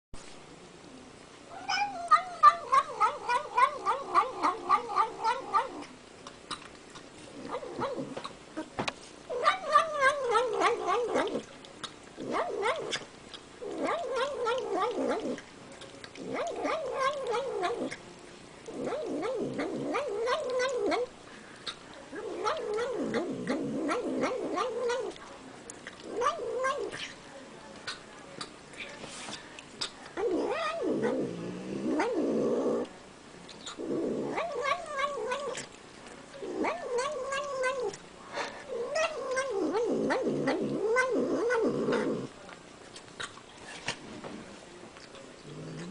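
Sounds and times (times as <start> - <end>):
cat warbling calls: 1.5 - 5.9, 16.2 - 17.9, 36.4 - 38.0.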